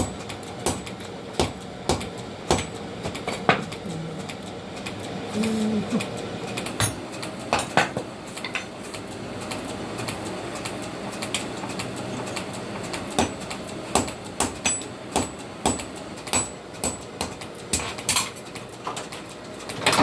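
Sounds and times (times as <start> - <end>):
hammer striking steel on anvil: 0.0 - 3.2, 13.2 - 18.2.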